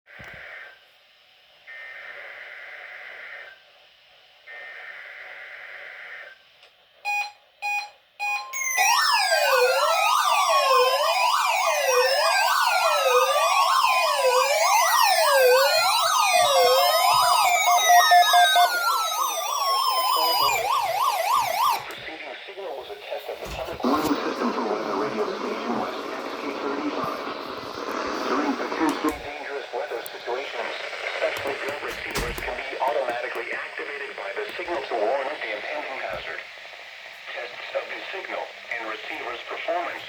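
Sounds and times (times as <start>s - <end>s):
short beeps: 7.1s - 8.7s
digital data tone bursts: 7.1s - 21.9s
warbling siren-like alarm: 7.1s - 22.0s.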